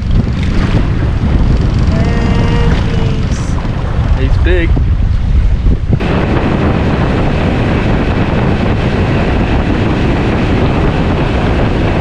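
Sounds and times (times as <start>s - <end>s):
wind buffeting microphone: 0.0s - 12.0s
rushing water: 2.0s - 4.8s.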